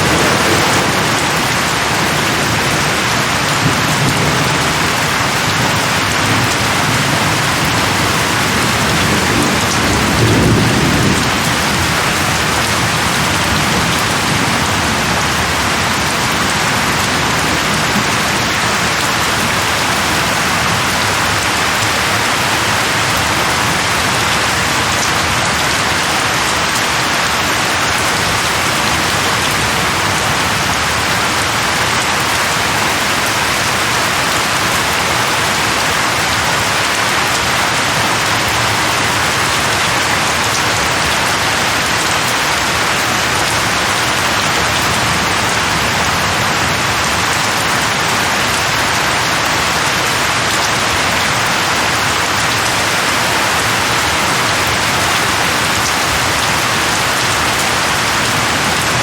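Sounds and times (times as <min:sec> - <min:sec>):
low thunder rumble: 0:00.0 - 0:22.1
heavy rain: 0:00.0 - 0:59.0.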